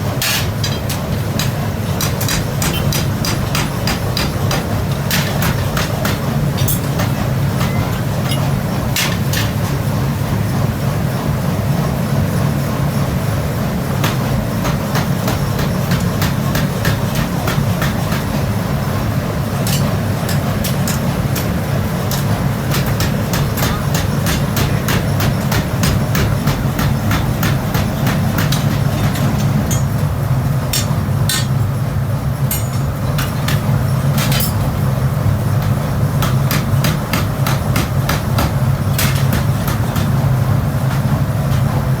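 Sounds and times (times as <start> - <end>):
workshop machinery rumbling: 0.0 - 42.0
metal clicks and knocks: 0.2 - 9.7.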